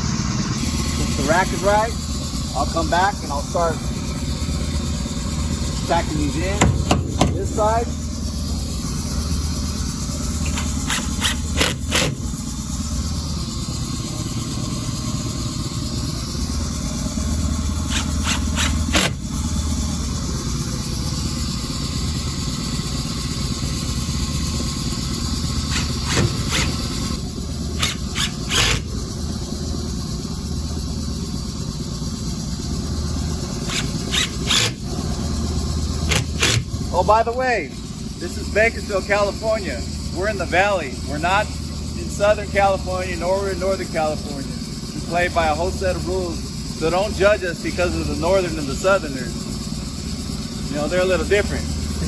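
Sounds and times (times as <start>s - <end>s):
low machine hum: 0.0s - 52.0s
knocks and clicks on metal frame: 6.5s - 7.7s.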